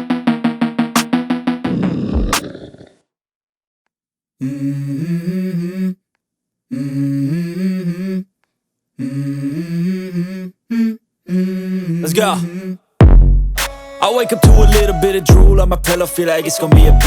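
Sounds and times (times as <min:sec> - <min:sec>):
wordless hummed vocal phrase: 0:09.0 - 0:12.8.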